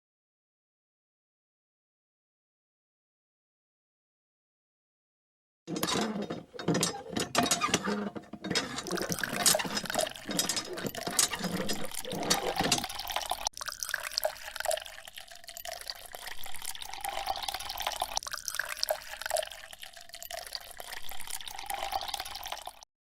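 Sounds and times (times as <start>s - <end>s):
water running and splashing: 5.7s - 22.8s.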